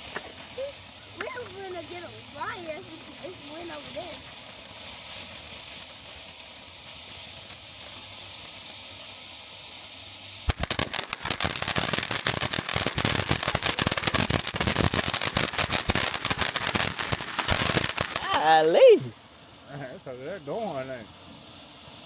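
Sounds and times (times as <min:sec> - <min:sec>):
faint hiss: 0:00.0 - 0:22.0
fireworks crackling: 0:00.0 - 0:22.0.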